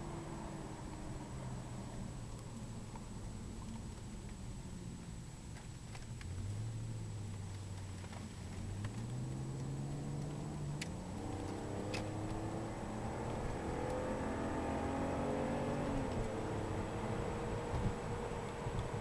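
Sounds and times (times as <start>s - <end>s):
car interior while accelerating: 0.0s - 19.0s
rising whine: 8.6s - 19.0s.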